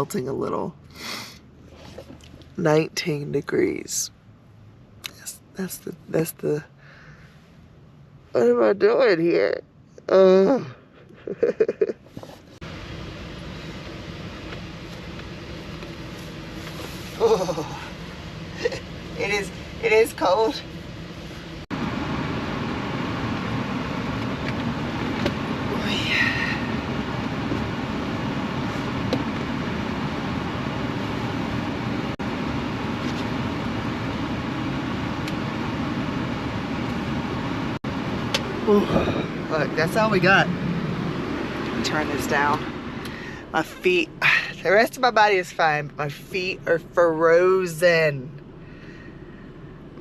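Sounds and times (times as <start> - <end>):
low mechanical hum: 0.0 - 50.0
van engine rumble and hiss: 0.0 - 50.0
short vocal sounds: 38.6 - 39.4.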